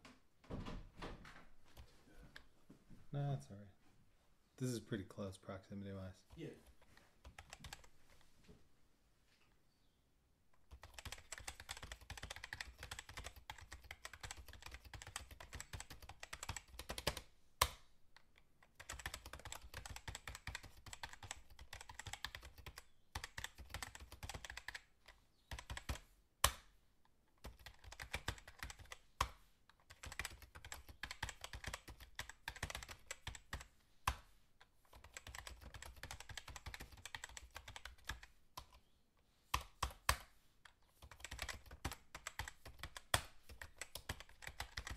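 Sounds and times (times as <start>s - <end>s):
fast typing on keyboard: 6.7s - 7.9s, 10.6s - 17.3s, 18.7s - 24.9s, 25.5s - 26.1s, 27.4s - 33.7s, 34.9s - 38.8s, 40.9s - 44.9s.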